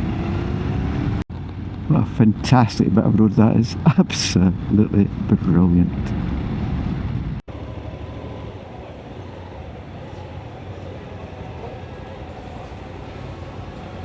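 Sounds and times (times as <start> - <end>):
wind noise on microphone: 4.6 - 7.4.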